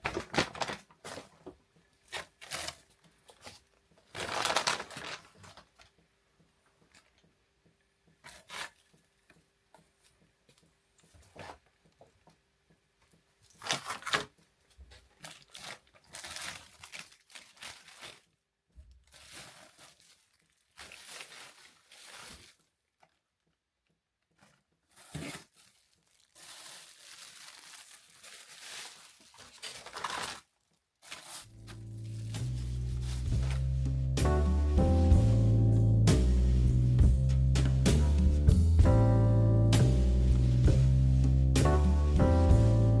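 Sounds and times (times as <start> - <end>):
plastic packaging crinkling: 0.0 - 5.9, 13.5 - 23.2, 24.4 - 34.6.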